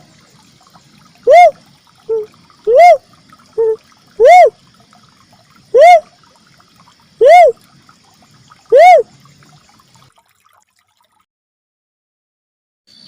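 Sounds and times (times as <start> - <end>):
loud hooting bird call: 1.2 - 3.0, 3.6 - 4.6, 5.7 - 6.1, 7.2 - 7.6, 8.7 - 9.1.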